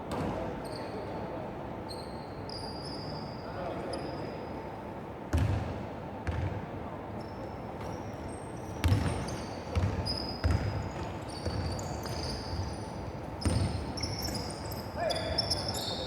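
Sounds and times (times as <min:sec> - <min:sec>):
basketball bouncing on hard court: 0:05.3 - 0:05.6, 0:06.2 - 0:06.5, 0:08.8 - 0:12.7, 0:13.4 - 0:13.8.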